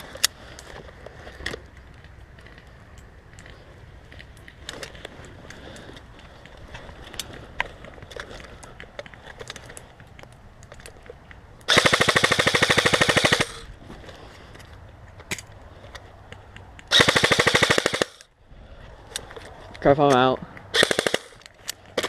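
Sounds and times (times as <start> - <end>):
airsoft rifle full-auto burst: 11.7 - 13.7, 16.9 - 18.3, 20.7 - 21.4.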